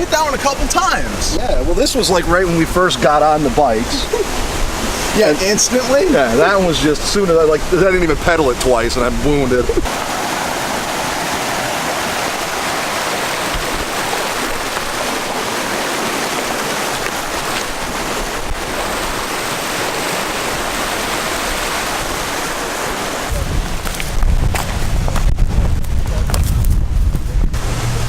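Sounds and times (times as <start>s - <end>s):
waterfall rushing: 0.0s - 24.7s, 27.6s - 28.0s.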